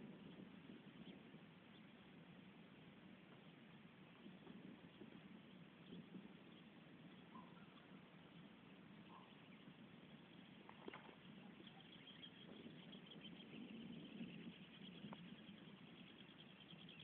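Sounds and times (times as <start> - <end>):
small animal calls: 5.9 - 17.0
rapid high chirping trill: 11.3 - 17.0.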